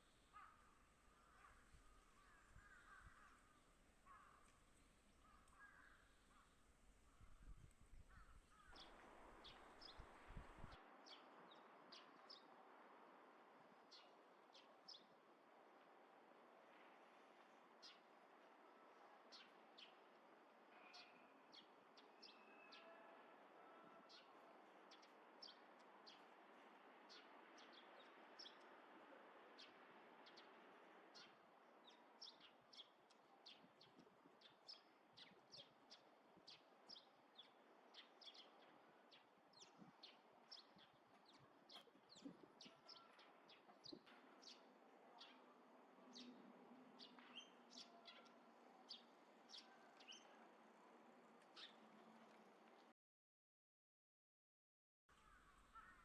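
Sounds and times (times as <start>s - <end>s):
small birds chirping: 31.2s - 45.5s, 46.1s - 50.4s.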